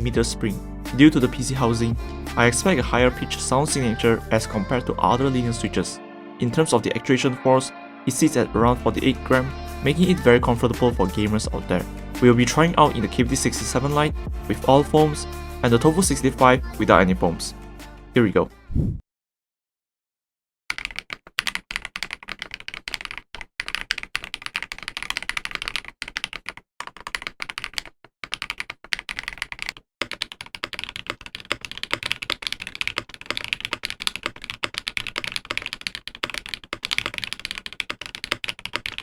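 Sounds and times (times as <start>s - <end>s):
fast typing on mechanical keyboard: 20.7s - 39.0s.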